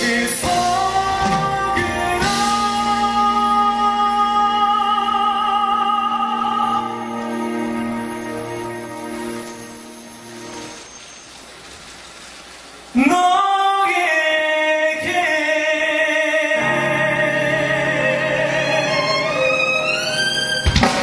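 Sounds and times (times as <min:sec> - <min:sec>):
person singing with vibrato: 0:00.0 - 0:09.6, 0:13.0 - 0:19.7
music: 0:00.0 - 0:10.0, 0:16.1 - 0:21.0.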